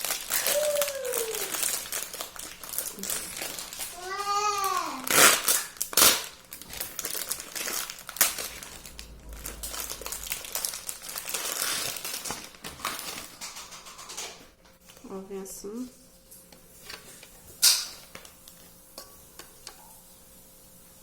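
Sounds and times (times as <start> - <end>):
plastic packet crinkling: 0.0 - 14.1.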